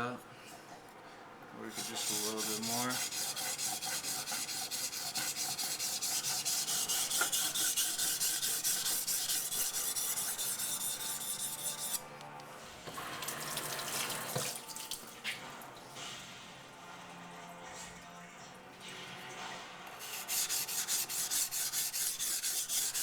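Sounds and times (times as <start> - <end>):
knife blade scraping on whetstone: 1.7 - 12.1, 20.0 - 23.0.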